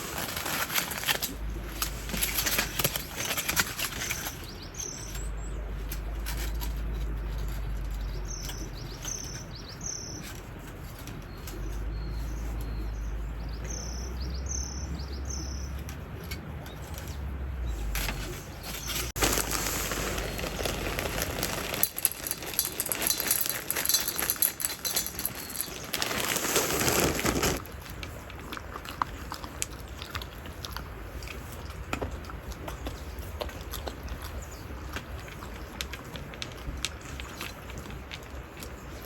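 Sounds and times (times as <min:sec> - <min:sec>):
clicks and rustles: 0:00.0 - 0:13.8, 0:15.6 - 0:39.0.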